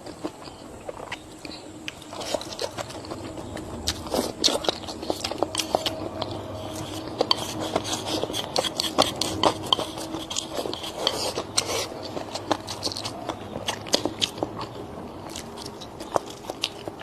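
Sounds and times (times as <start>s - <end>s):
utensils scraping a dish: 4.0s - 13.1s.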